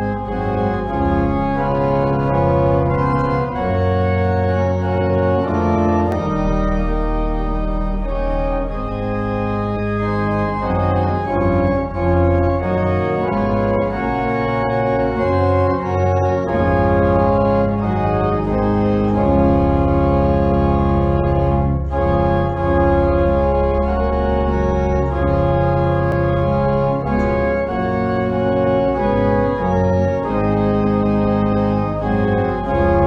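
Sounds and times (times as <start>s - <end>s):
organ chords: 0.0s - 33.0s.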